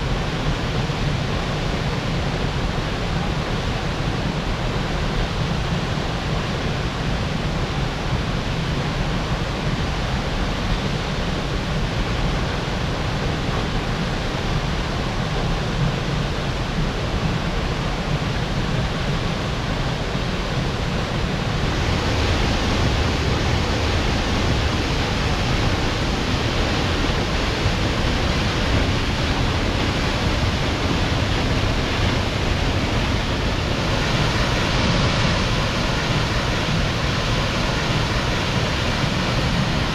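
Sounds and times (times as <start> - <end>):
waterfall rushing: 19.2 - 39.9.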